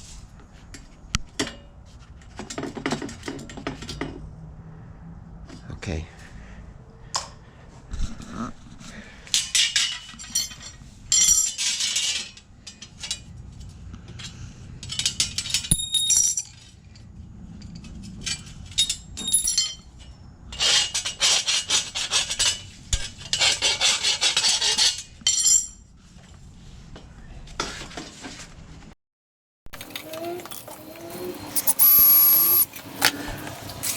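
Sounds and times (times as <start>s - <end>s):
cordless drill driving screws: 29.8s - 32.8s.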